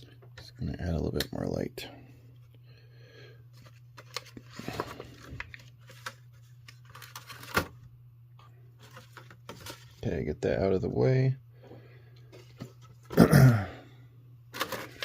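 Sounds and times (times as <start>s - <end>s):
packaging rustling and clicking: 3.6s - 7.8s, 8.8s - 10.0s, 14.5s - 15.0s.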